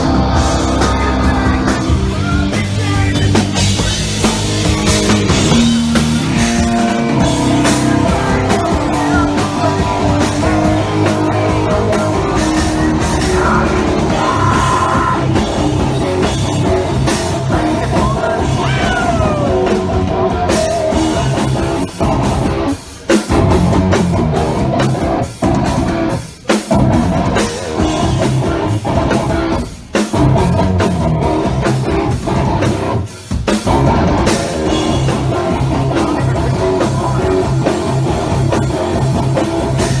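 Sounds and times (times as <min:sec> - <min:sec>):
sung vocals: 0:00.0 - 0:06.4, 0:07.2 - 0:22.7, 0:33.8 - 0:38.9
live rock band playing: 0:00.0 - 0:40.0.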